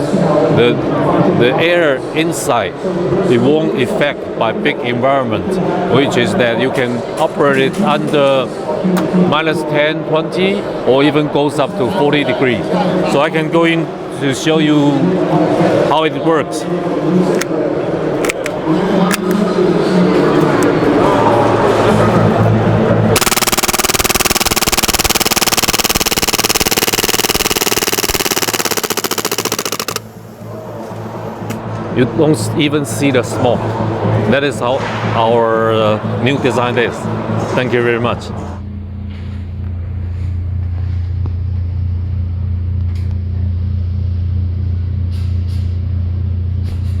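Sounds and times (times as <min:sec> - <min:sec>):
airsoft gun full-auto burst: 0:23.2 - 0:30.4.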